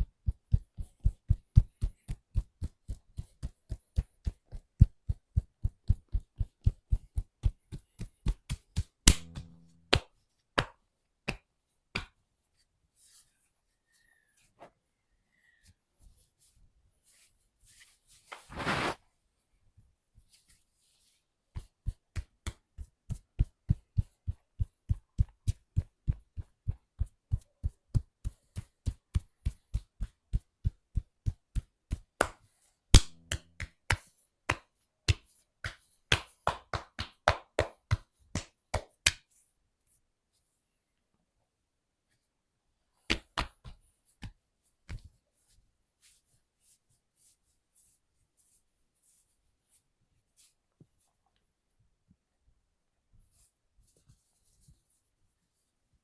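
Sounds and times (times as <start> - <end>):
hands slapping body in massage: 0.0 - 12.3, 20.2 - 39.4, 43.0 - 48.0
short rustle: 16.0 - 19.1.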